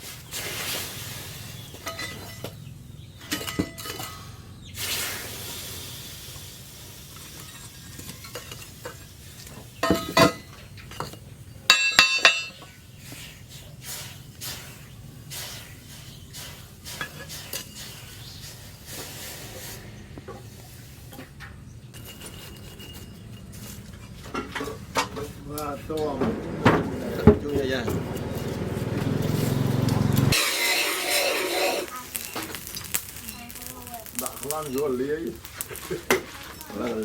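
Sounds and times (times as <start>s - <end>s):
steel tools clanking: 1.7s - 4.6s, 7.2s - 12.8s, 14.8s - 37.0s.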